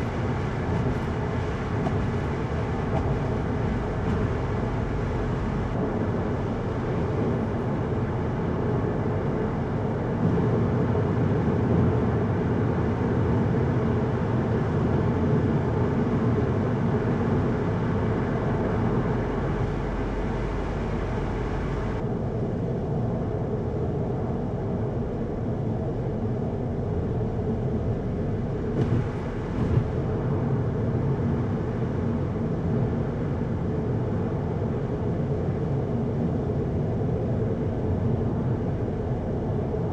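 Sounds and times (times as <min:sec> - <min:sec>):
car engine running: 0:00.0 - 0:07.6, 0:18.2 - 0:22.0
tyre and road noise: 0:00.0 - 0:08.8, 0:18.0 - 0:22.0, 0:28.6 - 0:30.6.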